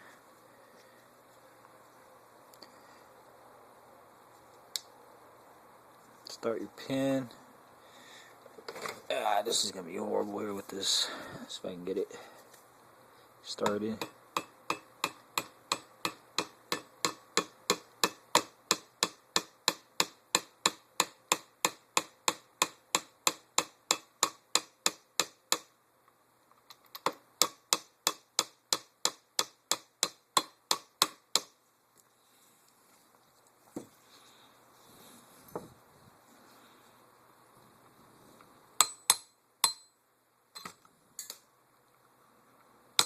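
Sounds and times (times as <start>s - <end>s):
metal wrench tapping a punch: 38.8s - 39.9s.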